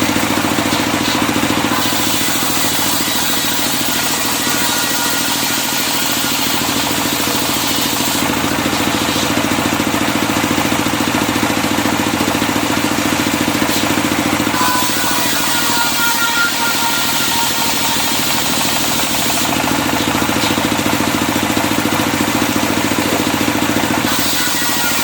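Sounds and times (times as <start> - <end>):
saw hissing: 0.6 - 9.7.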